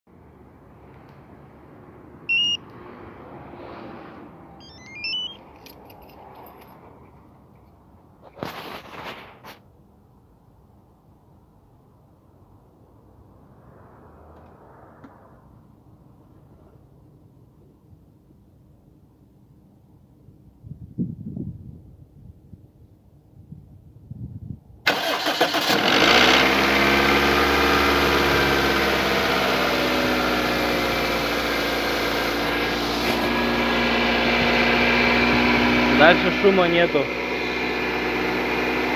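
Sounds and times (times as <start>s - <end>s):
rising stepped beeps: 2.3s - 2.6s, 4.6s - 5.5s
short electronic beep: 2.3s - 2.7s, 4.6s - 5.5s
starter motor cranking: 24.9s - 26.8s
car engine fast idle: 24.9s - 38.9s.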